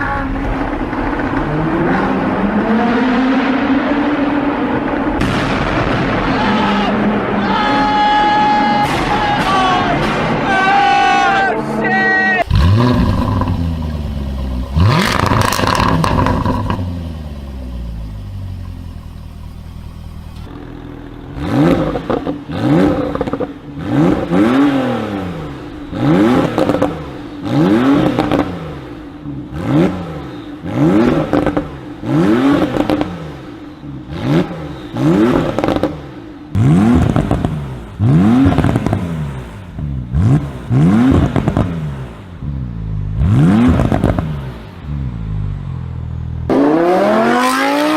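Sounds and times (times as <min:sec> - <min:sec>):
exhaust crackles and pops: 0:00.0 - 0:02.7, 0:12.4 - 0:33.4, 0:34.0 - 0:42.5, 0:43.1 - 0:44.8
car engine revving: 0:00.0 - 0:11.3, 0:11.9 - 0:47.9.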